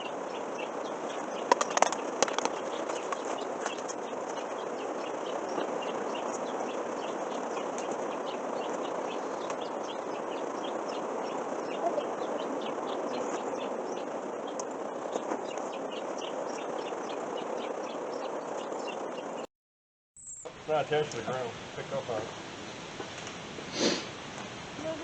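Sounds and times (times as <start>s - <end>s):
small birds chirping: 0.0s - 19.5s, 20.3s - 25.0s
steady hiss: 20.2s - 25.0s.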